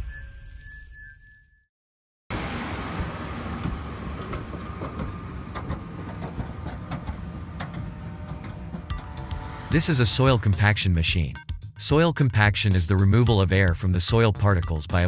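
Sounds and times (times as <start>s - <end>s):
soil compaction machine engine rumble: 2.3s - 9.7s
machine knocks and clatter: 3.0s - 9.0s.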